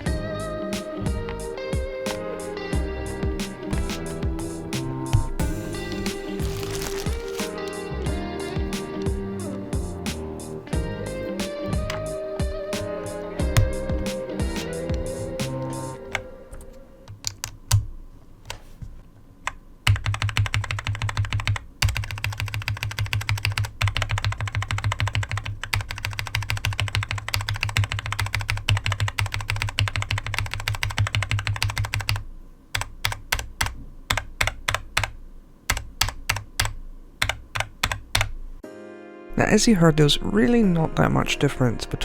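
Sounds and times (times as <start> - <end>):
mechanical keyboard typing: 17.1 - 17.9, 19.5 - 38.4.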